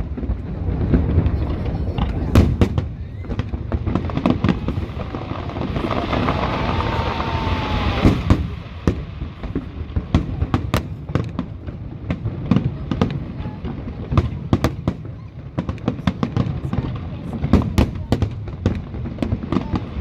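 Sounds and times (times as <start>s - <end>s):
fireworks bangs: 0.0s - 20.0s
fireworks crackling: 0.0s - 20.0s
fireworks whistling: 0.9s - 11.3s.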